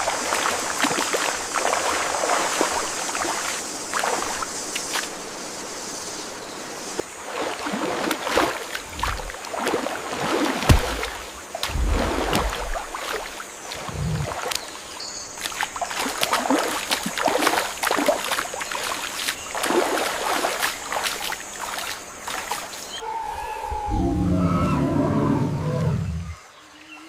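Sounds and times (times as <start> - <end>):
water splashing and sloshing: 0.0 - 23.0
deep thumps: 10.7 - 12.8.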